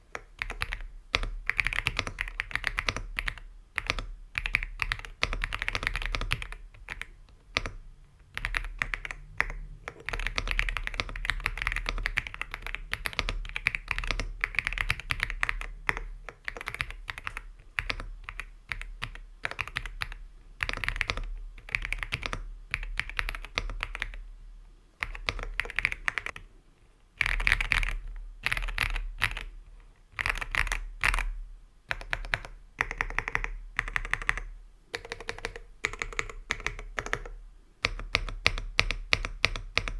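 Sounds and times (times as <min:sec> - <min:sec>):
mechanical keyboard typing: 0:00.0 - 0:24.2, 0:25.0 - 0:26.4, 0:27.2 - 0:29.5, 0:30.1 - 0:39.9.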